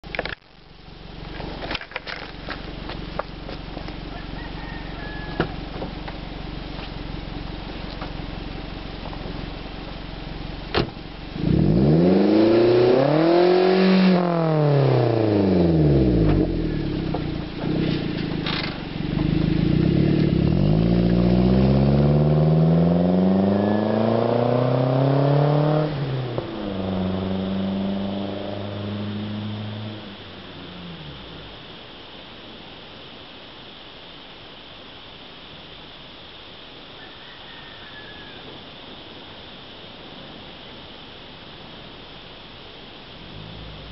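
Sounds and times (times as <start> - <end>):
car engine revving: 5.8 - 31.8, 43.2 - 43.9.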